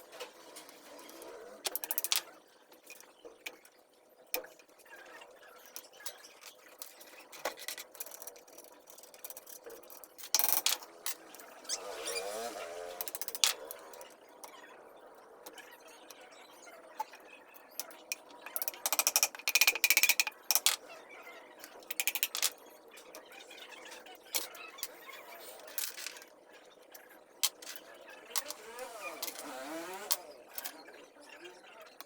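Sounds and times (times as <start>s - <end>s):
metal parts and tools knocking: 1.7s - 2.3s, 18.0s - 20.8s, 21.7s - 22.6s.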